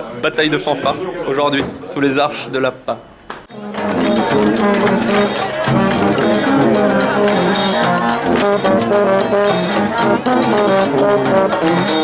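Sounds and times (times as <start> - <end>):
brass band playing: 3.5 - 12.0.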